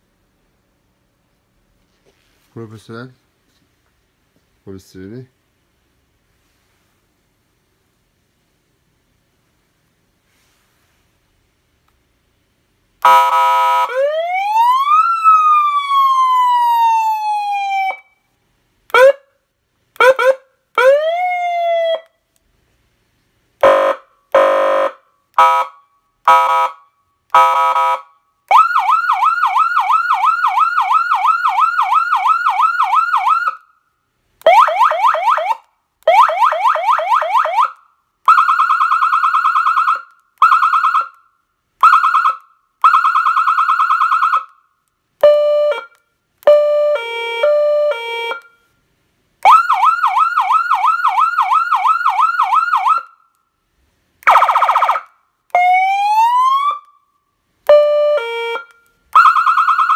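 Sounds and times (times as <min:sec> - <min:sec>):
siren horn blasts: 0:13.0 - 0:14.1, 0:23.6 - 0:26.8, 0:27.4 - 0:28.1, 0:45.2 - 0:48.5, 0:57.7 - 0:59.8
electronic police siren: 0:34.4 - 0:41.2, 0:46.5 - 0:48.6, 0:49.4 - 0:53.2, 0:54.3 - 0:57.0, 0:57.7 - 0:59.9.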